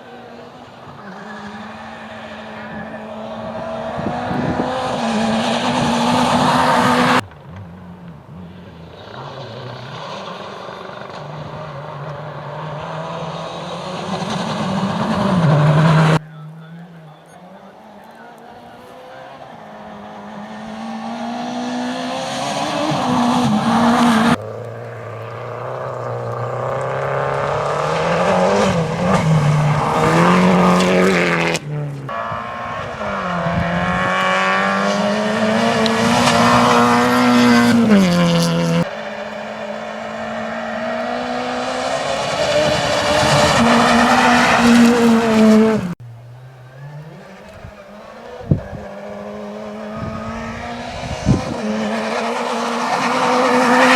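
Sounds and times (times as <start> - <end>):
rally car engines revving: 0.0 - 53.9
tyres on gravel: 15.7 - 53.9.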